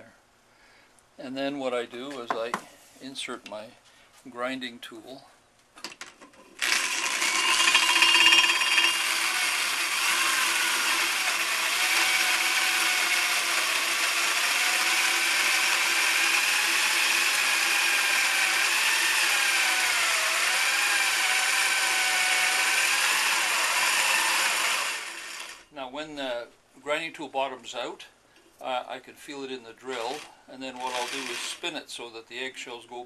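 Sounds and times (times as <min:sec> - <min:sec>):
electric drill grinding in metal pipe: 0:06.6 - 0:25.6, 0:30.0 - 0:31.6.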